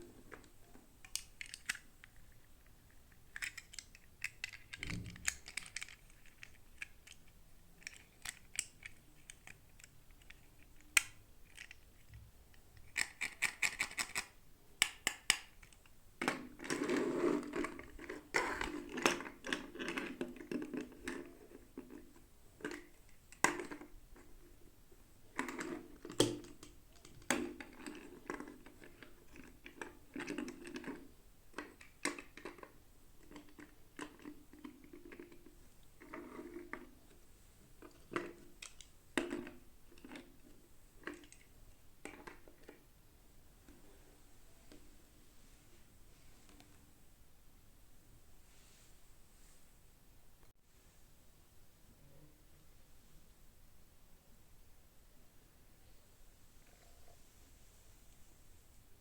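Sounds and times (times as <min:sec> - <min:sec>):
plastic parts clicking: 0:00.3 - 0:23.9, 0:37.8 - 0:40.4.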